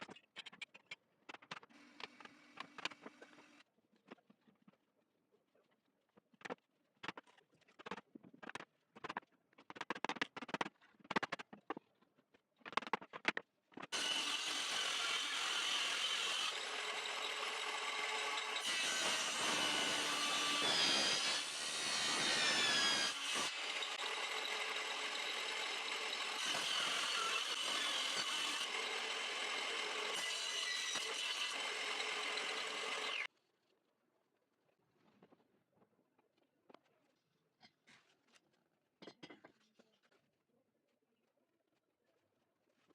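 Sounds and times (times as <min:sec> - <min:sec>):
power tool cutting wood: 0:13.9 - 0:33.3.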